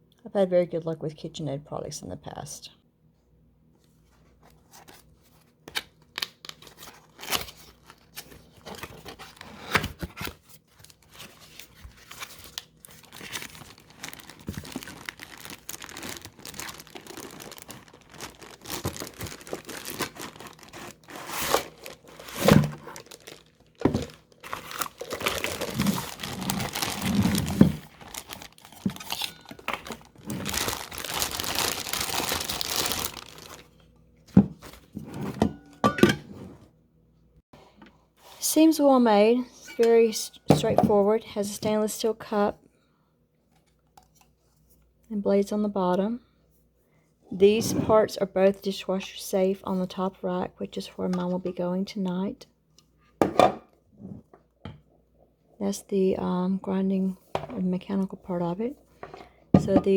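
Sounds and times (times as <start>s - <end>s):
packaging crinkling and tearing: 5.7s - 33.8s.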